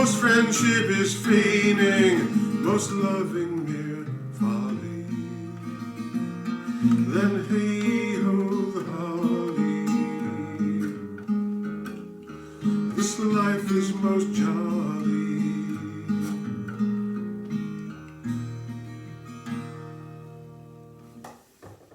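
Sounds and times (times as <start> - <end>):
person singing: 0.0 - 5.7, 6.8 - 11.1
acoustic guitar strumming chords: 0.0 - 21.2.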